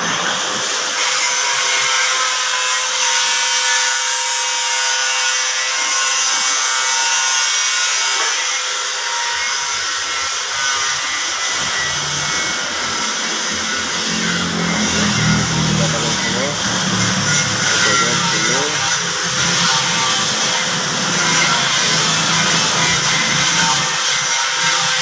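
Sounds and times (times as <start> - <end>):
power tool whining: 0.0 - 25.0.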